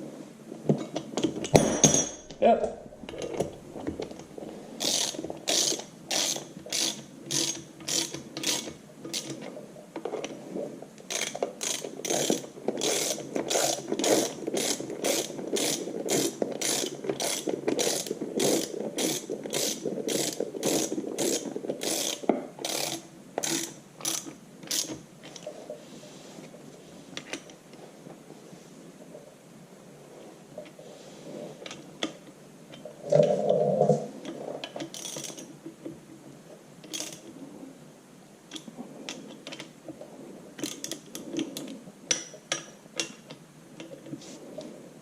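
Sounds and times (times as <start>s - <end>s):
socket ratchet clicking: 11.1s - 25.0s.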